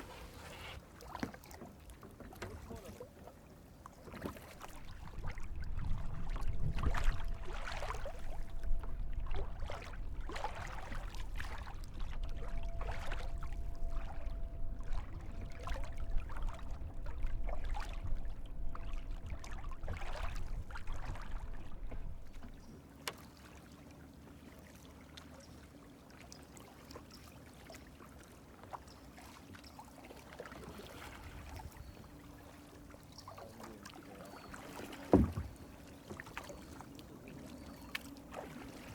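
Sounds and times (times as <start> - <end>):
kayak paddle splashing: 0.0 - 23.5, 32.8 - 38.9
water lapping: 0.0 - 38.9
faint steady hum: 4.6 - 22.7
wind on microphone: 4.7 - 22.6.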